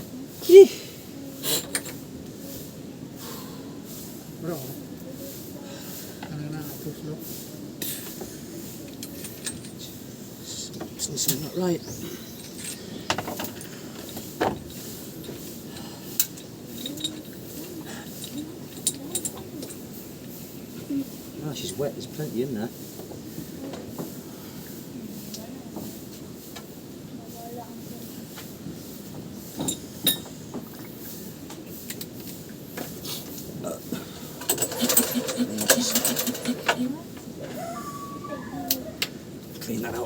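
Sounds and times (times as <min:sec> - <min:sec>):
hand tools clinking on metal: 0:08.8 - 0:10.0, 0:11.2 - 0:19.9, 0:29.6 - 0:30.4, 0:34.4 - 0:37.0.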